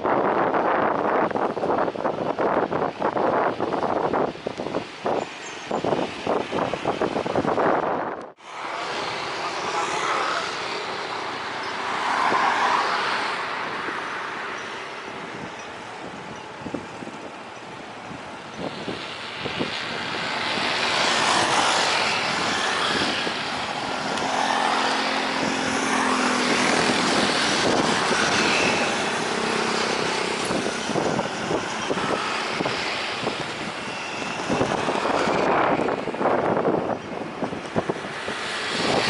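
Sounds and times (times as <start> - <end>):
steady rushing noise: 0.0 - 39.0
propeller aircraft engine drone: 8.4 - 39.0.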